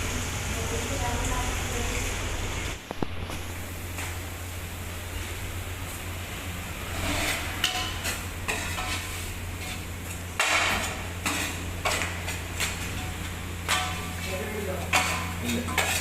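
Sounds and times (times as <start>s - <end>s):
utensil scraping metal pan: 6.9s - 16.0s.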